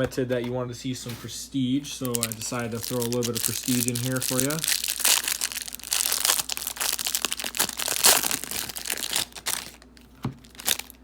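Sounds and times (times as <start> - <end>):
plastic wrapping crinkling: 1.9 - 11.0.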